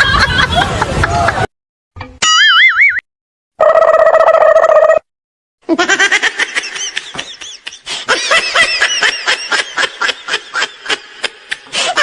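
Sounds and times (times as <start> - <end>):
high-pitched giggling laughter: 0.0 - 1.4, 5.6 - 12.0.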